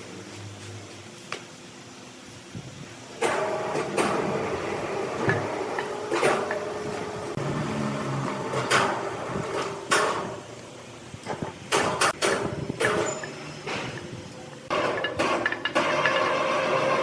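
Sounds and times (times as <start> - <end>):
sawmill machinery humming: 3.2 - 11.0
sharp clanks and knocks: 5.2 - 7.1, 8.3 - 10.4, 11.2 - 17.0.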